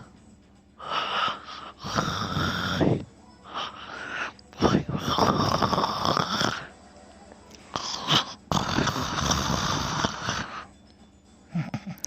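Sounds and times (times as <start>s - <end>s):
person snoring: 0.8s - 6.7s, 7.7s - 10.7s.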